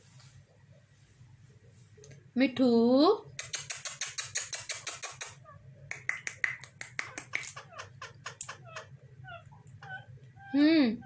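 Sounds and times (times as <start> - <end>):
parrots clicking and chirping: 3.4 - 10.4.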